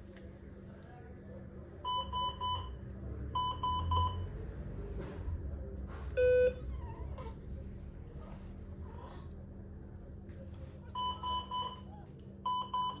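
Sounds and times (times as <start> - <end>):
medical monitor alarm beeping: 12.5 - 13.0.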